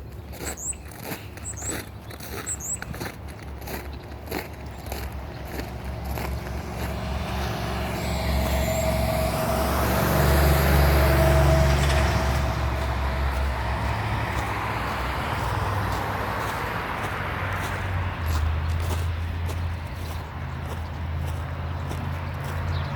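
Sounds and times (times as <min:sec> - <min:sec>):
vehicle passing by: 0:00.3 - 0:22.9
steady whine: 0:05.1 - 0:15.8.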